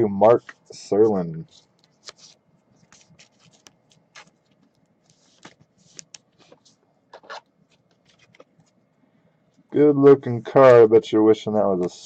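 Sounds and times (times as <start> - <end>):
handling trading cards: 0.4 - 8.8.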